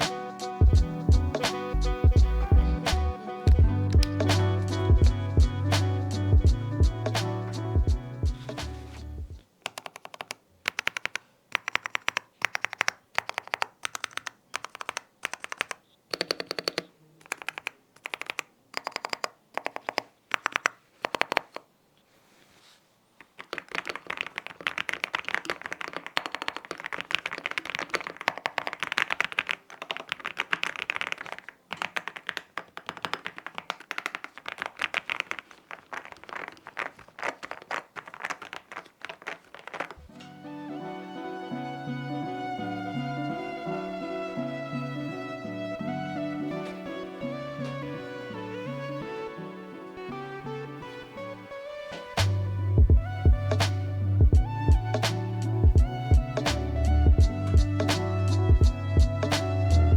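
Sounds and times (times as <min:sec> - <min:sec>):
mechanical keyboard typing: 0:09.6 - 0:21.7, 0:23.2 - 0:40.0.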